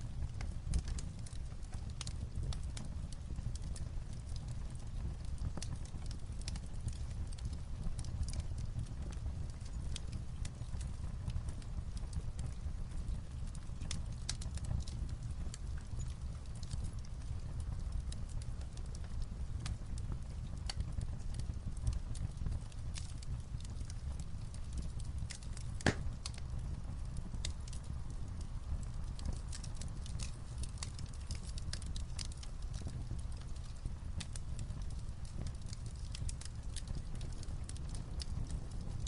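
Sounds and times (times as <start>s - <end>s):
light rain on a roof: 0.0s - 39.0s
wood fire crackling: 0.0s - 39.0s.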